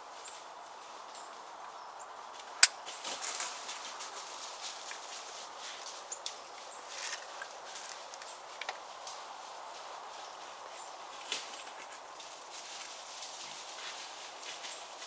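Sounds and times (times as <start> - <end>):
footsteps crunching through leaves: 2.9 - 15.0.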